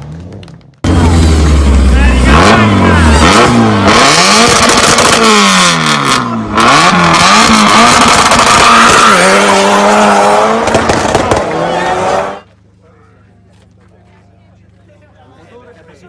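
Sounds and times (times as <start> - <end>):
car engine revving: 0.0 - 12.5.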